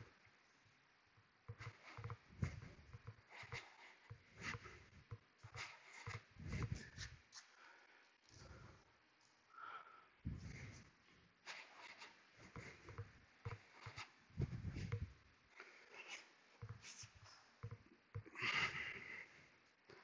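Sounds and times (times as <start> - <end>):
dull thumps: 1.5 - 7.0, 12.5 - 15.2.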